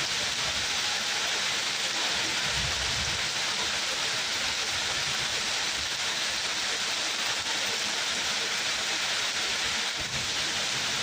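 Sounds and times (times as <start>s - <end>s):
heavy rain: 0.0s - 11.0s.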